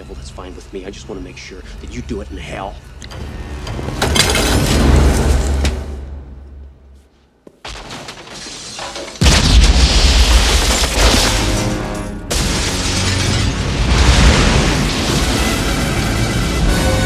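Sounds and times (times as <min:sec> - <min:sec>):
film score: 0:00.0 - 0:07.7, 0:09.2 - 0:17.0
shattering glass: 0:07.8 - 0:15.7
loud explosion: 0:09.2 - 0:11.7, 0:12.3 - 0:17.0.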